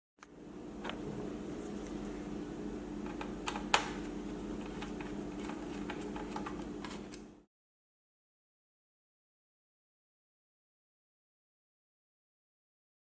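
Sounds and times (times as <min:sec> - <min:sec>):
steady hum: 0:00.2 - 0:07.5.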